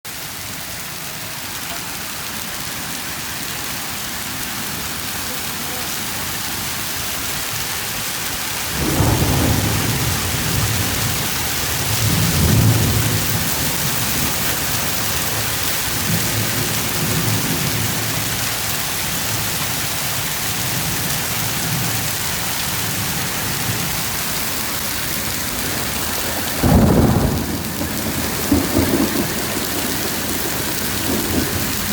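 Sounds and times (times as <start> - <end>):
heavy rain: 0.1 - 31.9
thunder rumbling: 8.5 - 19.5, 20.2 - 31.9
sharp thunder clap: 8.7 - 17.9, 25.4 - 31.9.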